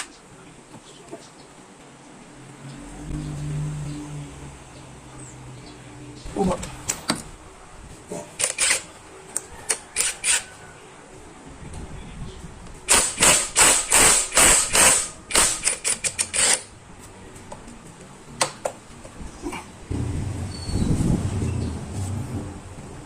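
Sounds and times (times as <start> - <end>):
metallic clicks of hand tools: 12.9 - 16.7.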